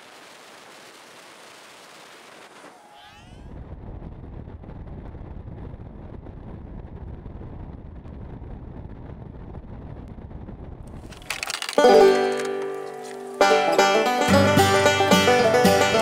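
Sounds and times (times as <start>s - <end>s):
steady hiss: 0.0s - 2.7s
wind buffeting microphone: 3.4s - 11.6s.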